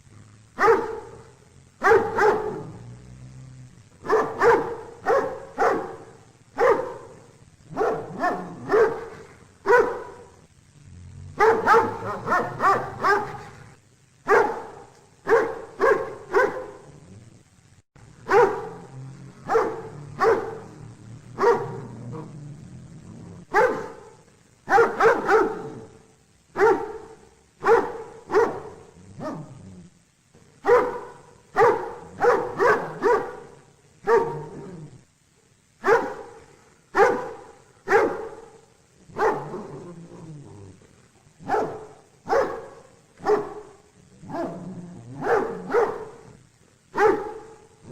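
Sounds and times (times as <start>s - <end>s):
dog barking: 0.6s - 2.8s, 4.0s - 10.4s, 11.4s - 13.6s, 14.2s - 16.9s, 18.2s - 22.3s, 23.5s - 29.6s, 30.6s - 35.0s, 35.8s - 39.8s, 41.4s - 47.9s.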